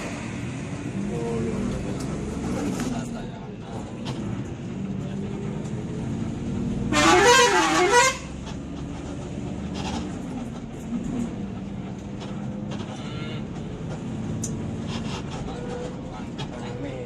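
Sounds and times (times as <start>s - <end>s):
bus engine humming: 0.0s - 17.0s
traffic noise: 0.0s - 17.0s
bus horn warbling tune: 6.9s - 8.5s, 12.9s - 13.6s.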